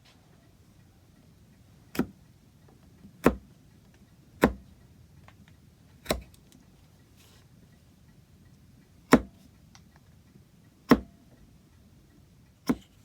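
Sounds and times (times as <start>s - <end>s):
sharp knocks on wood: 4.4s - 4.6s, 9.1s - 9.4s, 12.7s - 12.9s.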